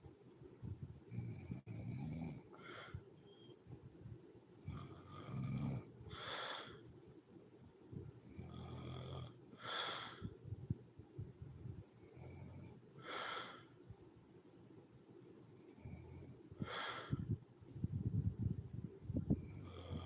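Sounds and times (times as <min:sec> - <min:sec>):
woman snoring: 0:04.6 - 0:06.7, 0:19.4 - 0:20.0
breathy huff of air: 0:06.1 - 0:06.8, 0:09.6 - 0:10.4, 0:13.0 - 0:13.8, 0:16.6 - 0:17.4.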